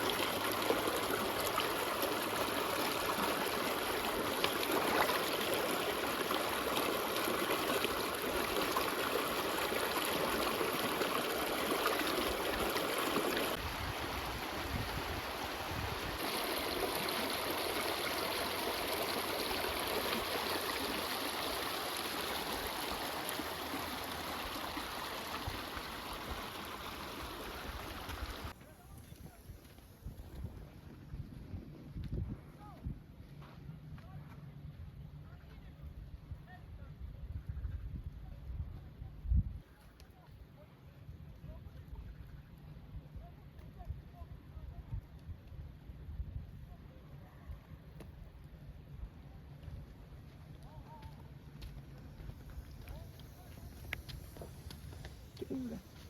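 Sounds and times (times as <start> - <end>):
water running steadily: 0.0 - 28.6, 51.6 - 56.0.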